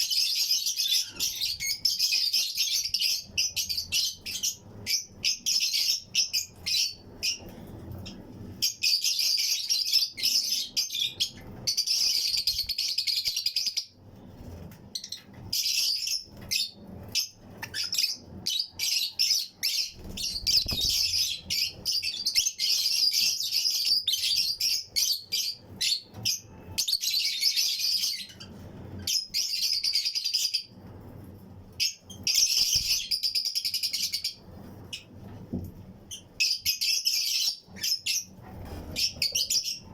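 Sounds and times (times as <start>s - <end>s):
lovebirds chirping: 0.0s - 14.0s, 15.0s - 30.8s.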